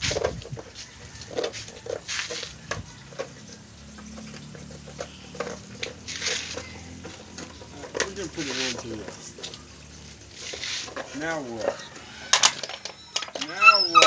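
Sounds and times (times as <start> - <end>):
scratchy rustles: 0.0 - 12.2
puppies pattering: 0.0 - 14.0.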